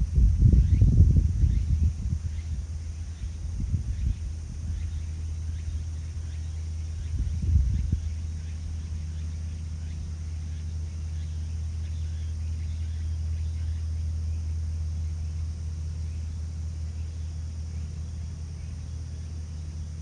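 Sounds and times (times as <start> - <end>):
strong wind on microphone: 0.0 - 9.0.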